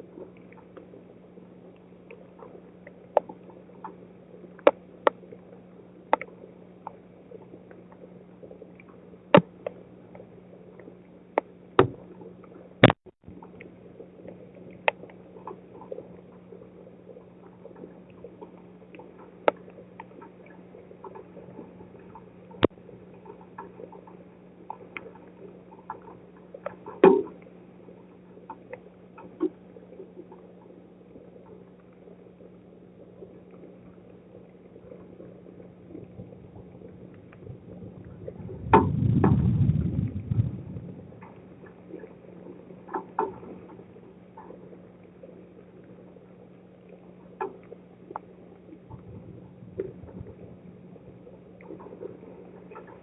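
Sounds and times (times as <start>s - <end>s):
steady low hum: 0.0s - 53.0s
rain drops ticking: 36.2s - 41.8s
thunder crack and rumble: 37.5s - 41.3s, 48.9s - 50.6s.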